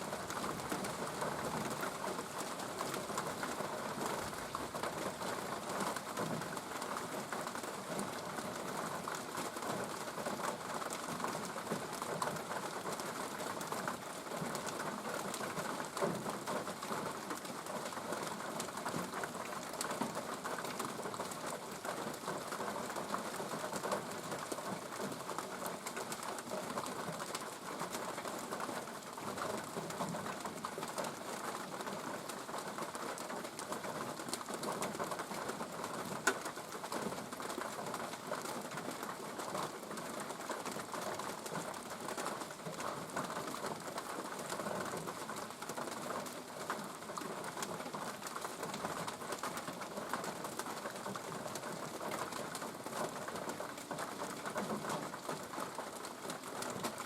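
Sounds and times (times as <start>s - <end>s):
steady rain falling: 0.0s - 57.0s
raindrops ticking on a surface: 0.1s - 57.0s.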